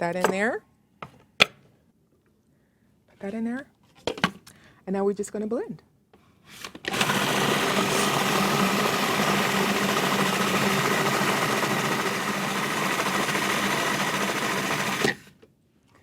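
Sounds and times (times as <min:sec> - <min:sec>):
food processor motor running: 0:06.9 - 0:15.3.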